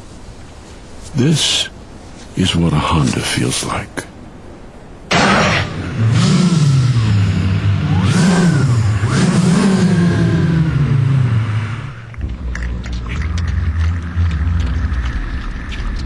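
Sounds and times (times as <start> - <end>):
low engine rumble: 4.8 - 16.0
engine revving: 5.1 - 16.0.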